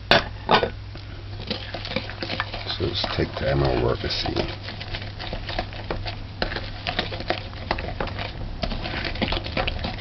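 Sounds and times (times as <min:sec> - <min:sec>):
utensil tapping mixing bowl: 0:01.4 - 0:10.0.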